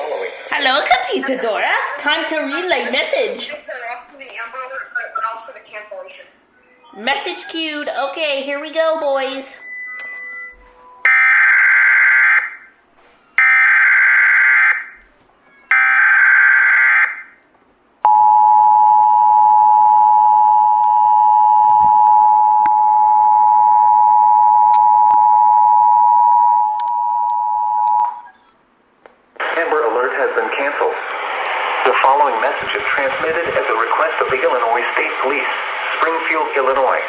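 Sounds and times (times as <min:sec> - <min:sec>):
two-tone attention signal: 0:09.6 - 0:11.2, 0:18.1 - 0:28.4.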